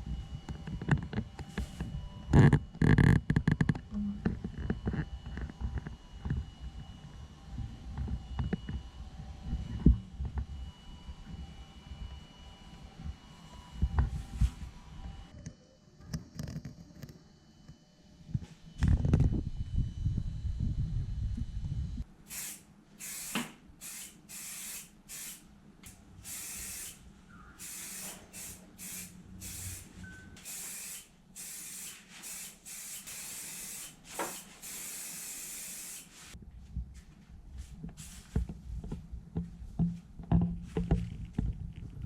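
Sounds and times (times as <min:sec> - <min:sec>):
spray paint hissing from nozzle: 0:22.3 - 0:25.4, 0:26.2 - 0:36.4.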